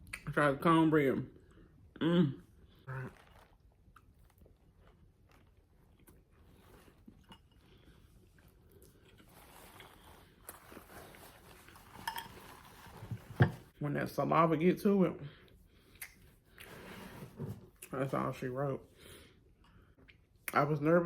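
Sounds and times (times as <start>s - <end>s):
person chewing: 2.6s - 12.7s
soft mouth clicks: 16.0s - 16.2s.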